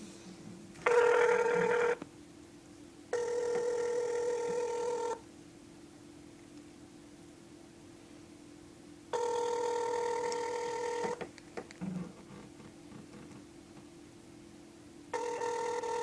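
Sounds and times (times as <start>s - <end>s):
telephone ringback tone: 0.9s - 2.0s, 3.1s - 5.2s, 9.2s - 11.2s, 15.2s - 16.0s.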